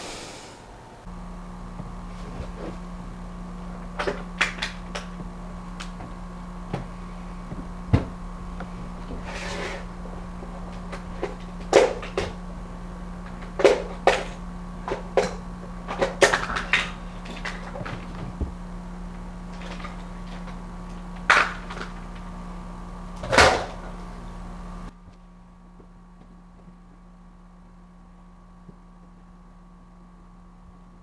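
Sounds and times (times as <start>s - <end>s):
electrical hum: 0.0s - 29.7s.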